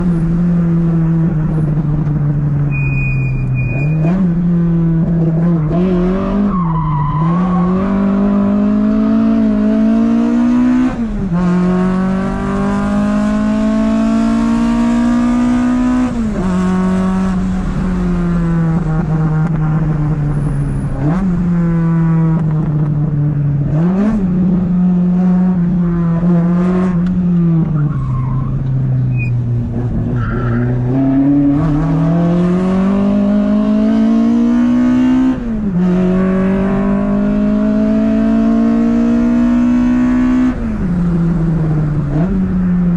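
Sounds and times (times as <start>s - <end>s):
car engine revving hard: 7.2s - 20.1s, 29.7s - 40.8s.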